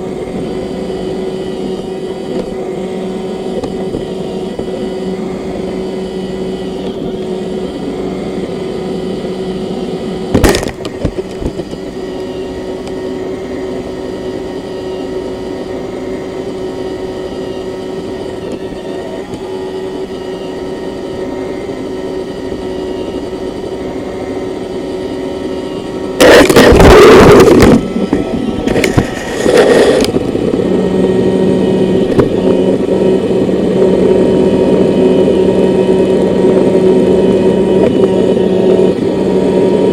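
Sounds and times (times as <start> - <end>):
robot vacuum motor hum: 0.0 - 39.9
vacuum clattering: 10.3 - 12.0, 26.2 - 39.9.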